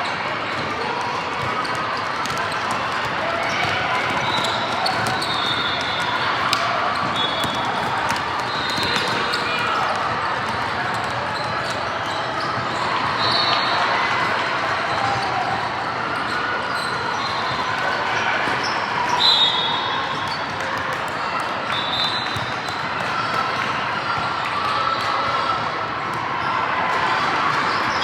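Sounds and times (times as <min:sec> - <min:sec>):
basketball bouncing on court: 0:00.5 - 0:12.5
shoe squeaks: 0:01.6 - 0:10.0.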